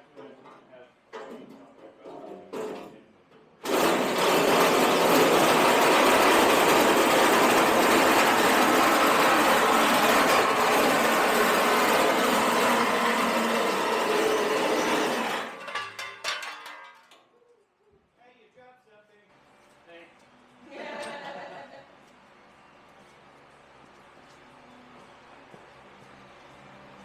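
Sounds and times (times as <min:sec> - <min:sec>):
power tool running: 0:03.6 - 0:15.8.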